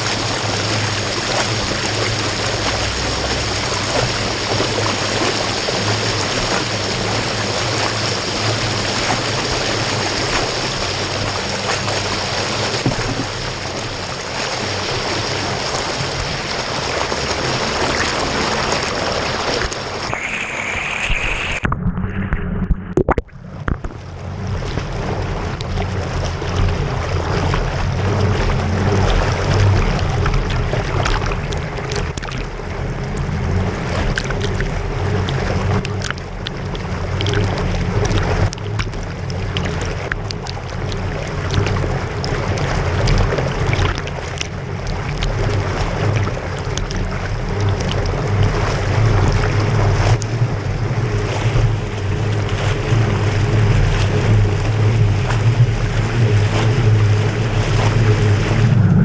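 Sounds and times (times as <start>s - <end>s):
bicycle wheels splashing through water: 0.0s - 21.6s, 23.9s - 59.0s
wind buffeting microphone: 21.6s - 59.0s.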